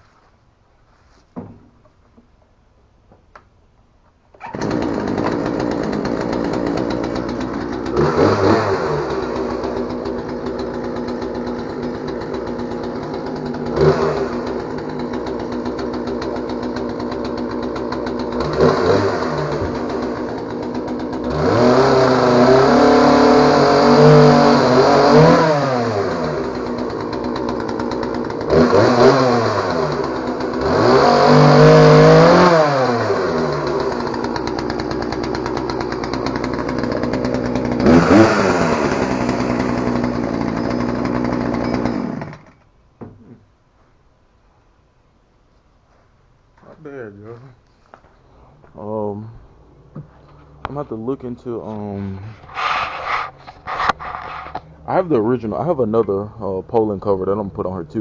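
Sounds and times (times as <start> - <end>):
chainsaw revving and idling: 4.4 - 42.6.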